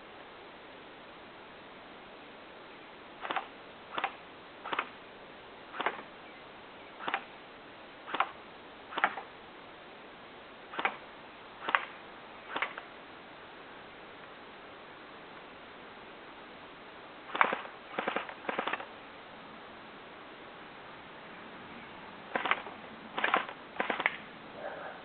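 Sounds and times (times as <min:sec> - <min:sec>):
airsoft gun single shots: 0:03.2 - 0:05.0, 0:05.7 - 0:06.1, 0:07.0 - 0:07.3, 0:08.1 - 0:09.3, 0:10.7 - 0:11.0, 0:11.6 - 0:12.8, 0:17.3 - 0:18.9, 0:22.3 - 0:24.2.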